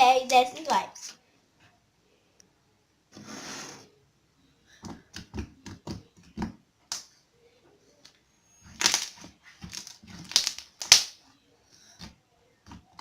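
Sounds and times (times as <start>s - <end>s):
slime squishing: 8.7s - 11.1s.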